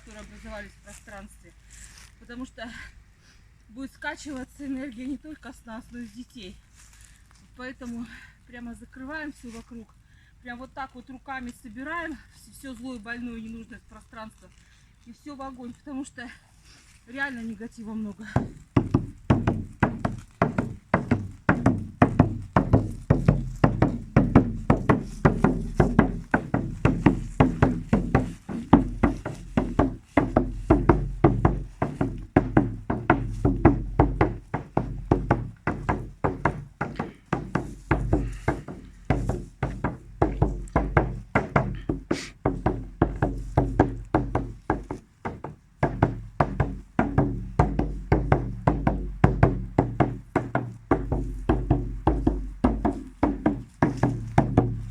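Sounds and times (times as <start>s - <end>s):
hand drum beating: 18.4s - 54.9s.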